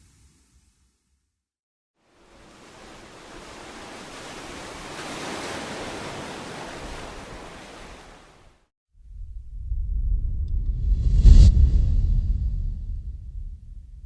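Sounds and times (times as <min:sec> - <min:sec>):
low rumble: 0:09.0 - 0:14.0.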